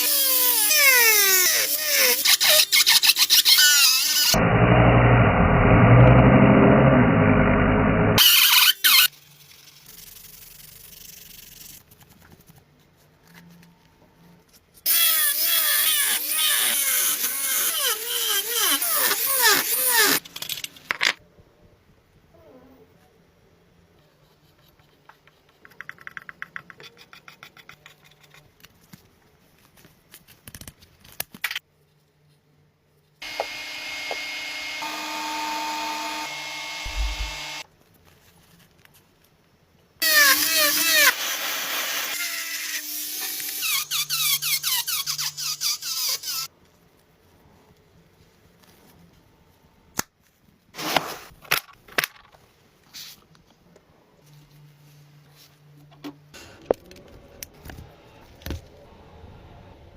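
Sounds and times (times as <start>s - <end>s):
power tool running: 33.2s - 37.6s.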